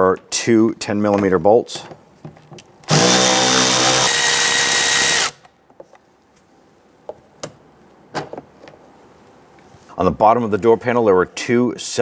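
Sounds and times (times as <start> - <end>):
power driver whining: 2.8 - 5.4.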